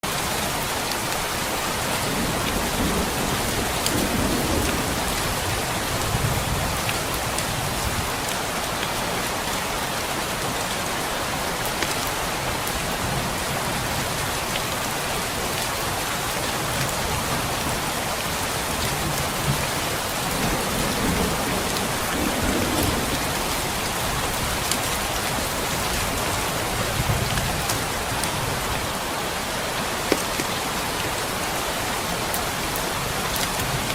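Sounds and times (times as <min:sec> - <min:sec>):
heavy rain falling: 0:00.0 - 0:33.9
low thunder rumbles: 0:02.0 - 0:08.2, 0:19.0 - 0:28.9.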